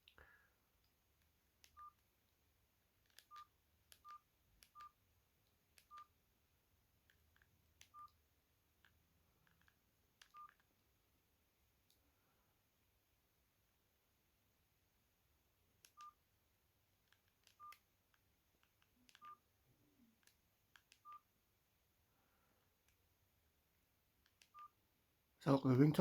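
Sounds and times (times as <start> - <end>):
phone keypad beeps: 1.7 - 2.0, 3.2 - 5.0, 5.8 - 6.1, 7.9 - 8.2, 10.3 - 10.6, 17.5 - 17.8, 21.0 - 21.3, 24.5 - 24.8.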